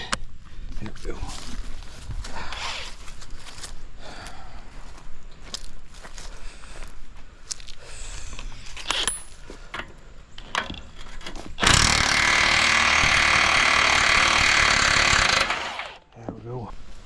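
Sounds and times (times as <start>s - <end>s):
power tool running: 11.6s - 16.0s.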